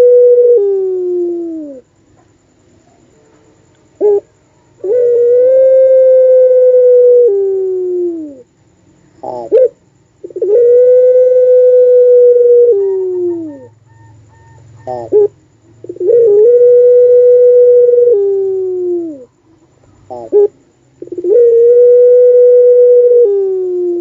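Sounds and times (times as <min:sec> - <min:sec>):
dove cooing: 0:00.0 - 0:01.9, 0:04.0 - 0:08.5, 0:09.2 - 0:24.0.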